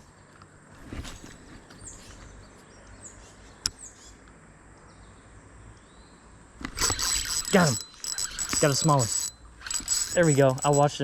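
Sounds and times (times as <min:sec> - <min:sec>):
bird chirps: 0:01.8 - 0:04.2.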